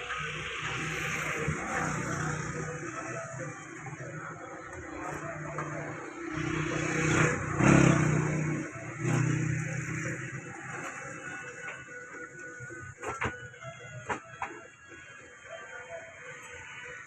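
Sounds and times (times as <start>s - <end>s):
vehicle engine running: 0.0s - 12.7s.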